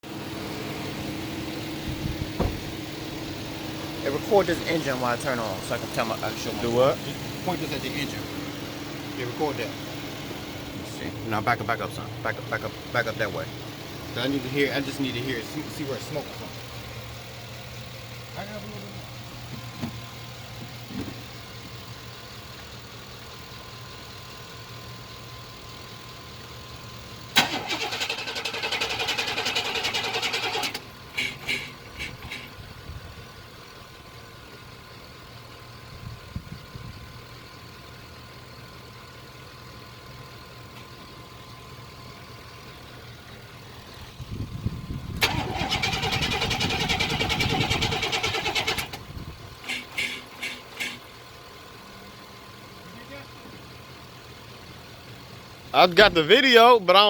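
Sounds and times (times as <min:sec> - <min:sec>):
engine being cranked by starter: 0:27.3 - 0:32.5, 0:44.9 - 0:51.1.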